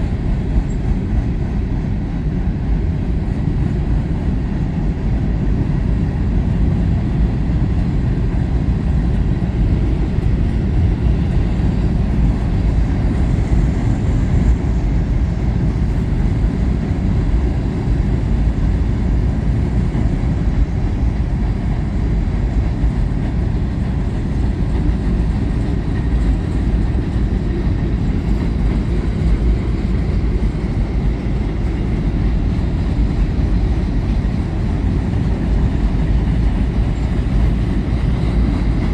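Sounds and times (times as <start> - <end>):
freight train rumbling past: 0.0 - 38.9.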